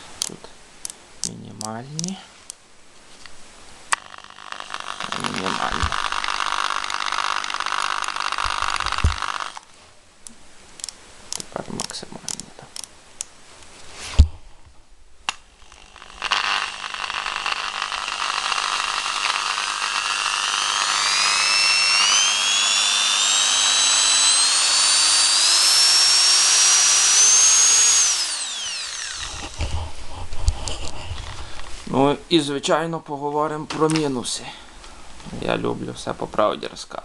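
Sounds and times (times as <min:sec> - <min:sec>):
electric drill motor whine: 0:04.0 - 0:09.7, 0:15.6 - 0:29.8.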